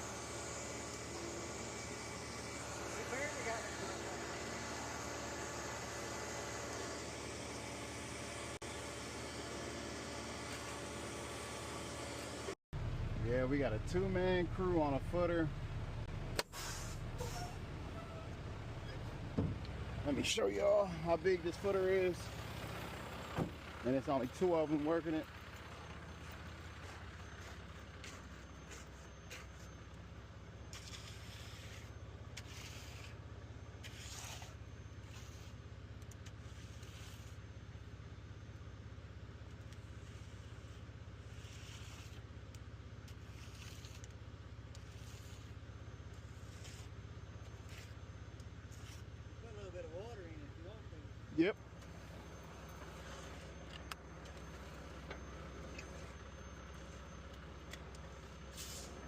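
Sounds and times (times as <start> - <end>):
truck engine humming: 0.0 - 59.0
diesel engine idling: 17.0 - 30.7, 48.1 - 59.0
short scraping sounds: 30.7 - 33.2, 33.8 - 35.6, 58.5 - 59.0.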